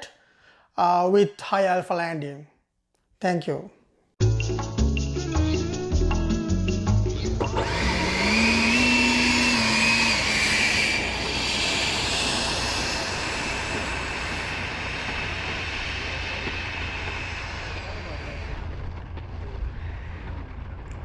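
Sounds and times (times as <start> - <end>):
electric ducted fan whining: 7.0 - 21.0.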